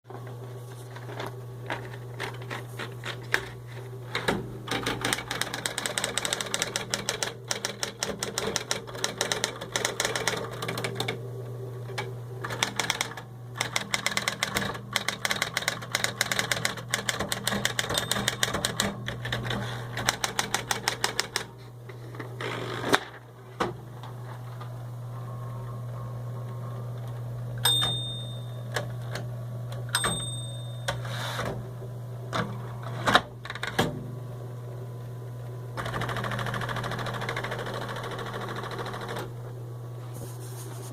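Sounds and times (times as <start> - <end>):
typewriter motor humming: 0.9 - 11.2, 11.8 - 21.5, 35.8 - 39.4
typewriter key strikes: 12.5 - 21.4, 27.6 - 28.9, 29.9 - 31.0
short ringing tone: 27.6 - 28.8, 30.0 - 31.2.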